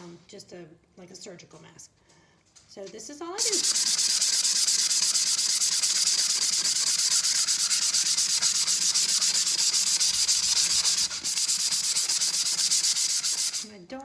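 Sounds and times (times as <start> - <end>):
sandpaper rubbing on steel cup: 3.4 - 13.7.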